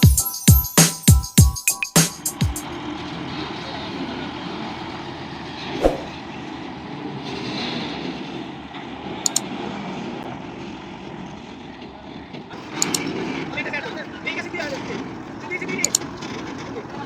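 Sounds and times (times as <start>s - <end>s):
short clicks: 12.8s - 13.0s.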